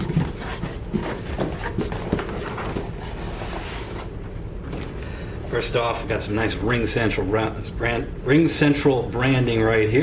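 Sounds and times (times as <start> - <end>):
cardboard rustling: 0.0 - 4.1.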